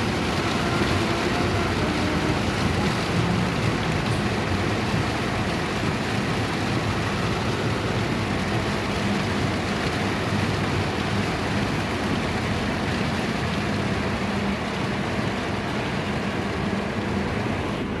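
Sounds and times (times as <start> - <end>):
heavy rain: 0.0 - 18.0
low engine hum: 0.0 - 18.0
road noise: 0.0 - 18.0.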